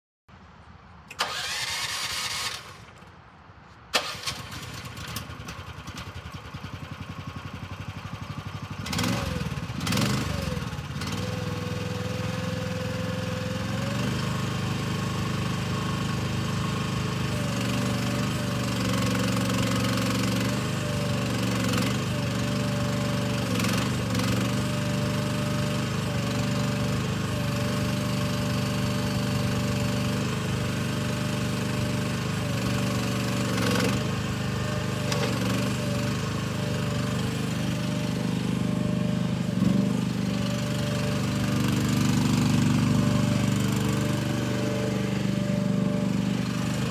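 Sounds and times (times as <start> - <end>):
small engine cranking and running: 1.1 - 3.1, 4.0 - 46.9.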